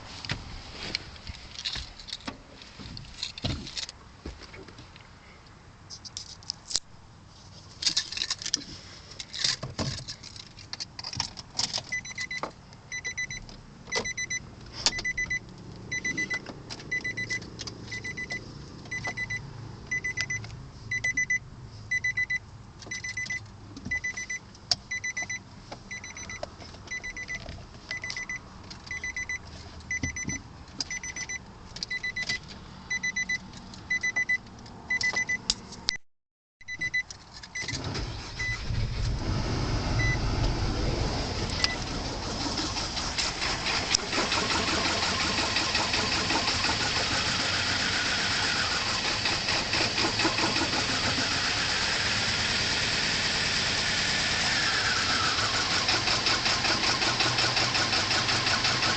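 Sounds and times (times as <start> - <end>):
car warning chime: 11.9 - 35.5, 36.6 - 38.6, 40.0 - 40.2
low rumble: 38.4 - 43.2.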